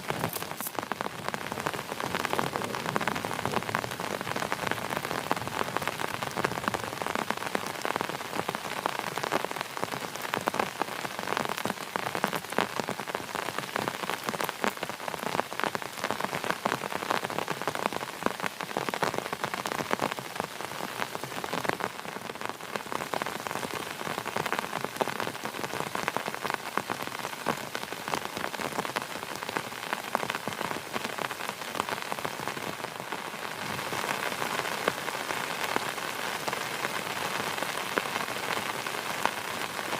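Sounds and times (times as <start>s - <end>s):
raindrop impacts: 0.0s - 7.2s
heavy rain: 0.0s - 39.9s.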